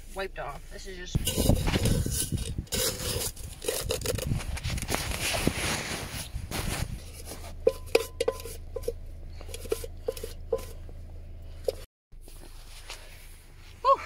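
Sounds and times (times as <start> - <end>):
metal cookware clinking: 7.6 - 10.8.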